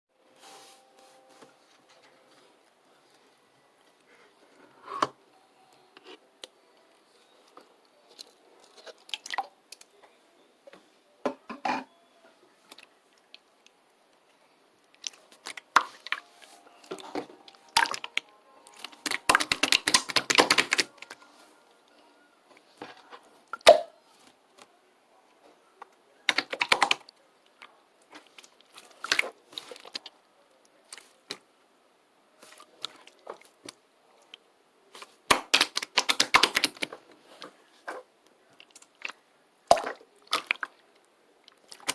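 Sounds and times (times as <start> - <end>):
small objects tapping and clicking: 17.7 - 21.0, 35.3 - 37.0.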